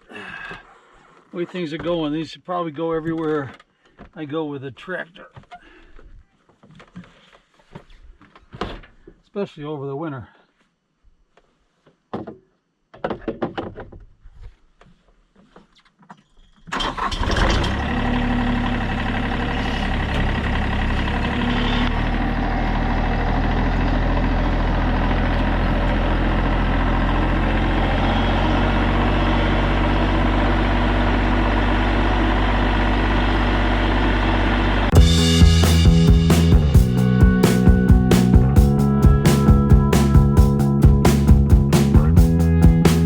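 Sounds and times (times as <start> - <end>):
tractor engine starting and idling: 16.7 - 43.0.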